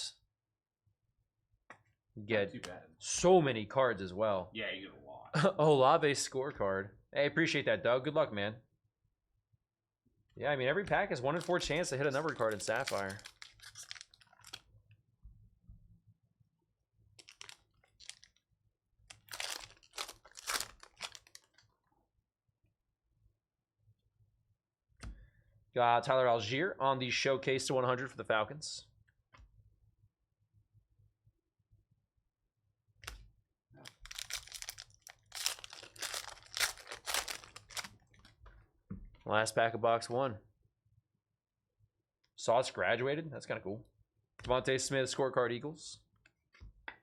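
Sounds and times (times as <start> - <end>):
card pack wrapper crinkling and tearing: 11.3 - 14.7, 17.2 - 18.4, 19.1 - 21.6, 33.8 - 38.3.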